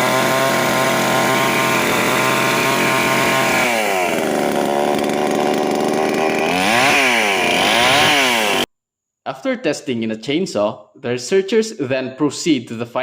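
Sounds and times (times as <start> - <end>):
chainsaw engine revving: 0.0 - 8.7.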